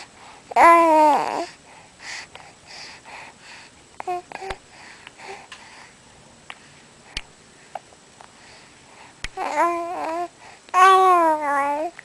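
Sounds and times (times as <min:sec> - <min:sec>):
baby babbling: 0:00.6 - 0:01.5, 0:09.4 - 0:12.0.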